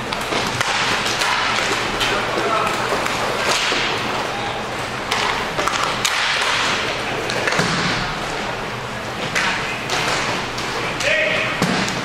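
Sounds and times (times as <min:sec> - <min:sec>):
skate wheels rolling: 0:00.0 - 0:12.0
stick hitting puck: 0:00.1 - 0:03.9, 0:05.1 - 0:08.0.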